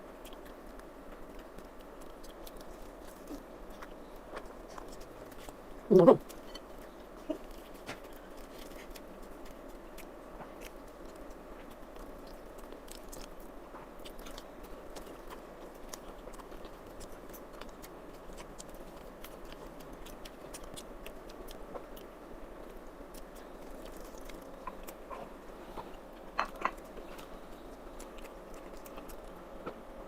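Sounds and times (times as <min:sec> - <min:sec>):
person chewing food: 0:00.1 - 0:30.0.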